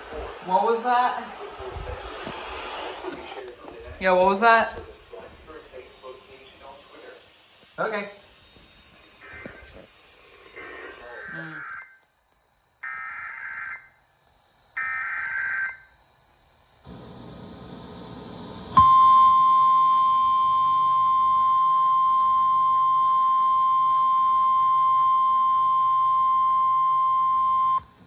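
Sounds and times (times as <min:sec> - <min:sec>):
radio noise hiss: 0:00.0 - 0:14.0, 0:14.6 - 0:19.2
digital data bursts: 0:11.0 - 0:16.8
steady alarm tone: 0:11.0 - 0:28.0.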